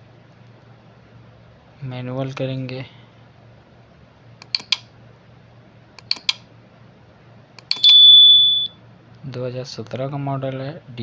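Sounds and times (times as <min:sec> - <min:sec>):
button clicks: 0:04.4 - 0:04.8, 0:06.0 - 0:06.4, 0:07.6 - 0:08.7
high-pitched beep: 0:07.7 - 0:08.8.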